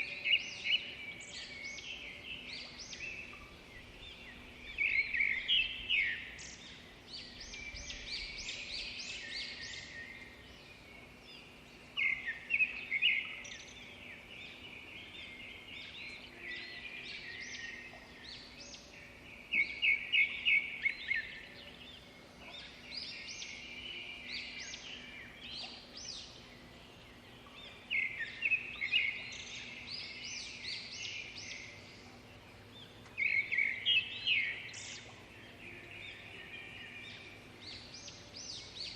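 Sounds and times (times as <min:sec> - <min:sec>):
songbird singing: 0:00.0 - 0:38.9.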